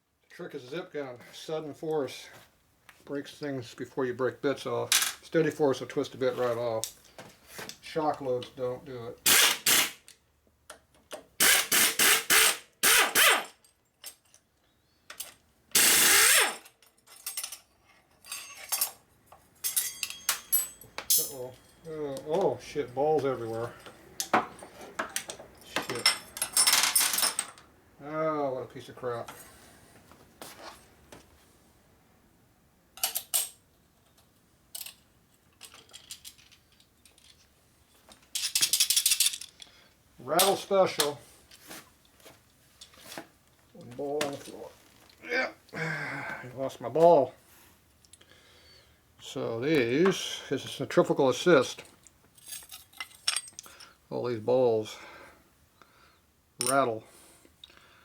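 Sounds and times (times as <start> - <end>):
air impact wrench bursts: 9.2 - 10.0, 11.4 - 13.6, 15.7 - 16.6
metal parts clinking: 15.1 - 21.9, 23.7 - 27.7, 34.7 - 37.5, 38.2 - 39.7, 51.8 - 54.0, 56.6 - 56.9
light metal clinks: 16.8 - 23.0.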